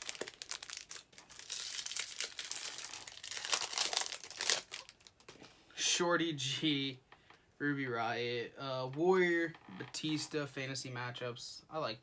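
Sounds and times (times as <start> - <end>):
foil wrapper crinkling and tearing: 0.0 - 5.3.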